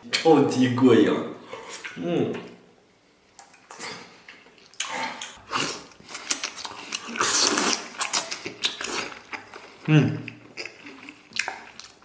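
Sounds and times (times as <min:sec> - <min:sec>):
wet slurping and chewing: 0:03.5 - 0:12.0.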